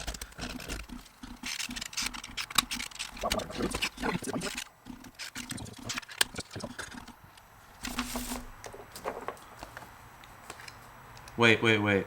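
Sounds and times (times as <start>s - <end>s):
small parts clicking and knocking: 0.0s - 9.5s.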